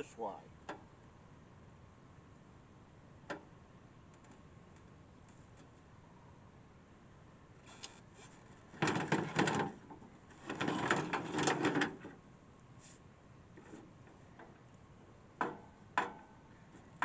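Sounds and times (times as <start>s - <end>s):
plastic air conditioner casing rattling: 8.7s - 12.2s.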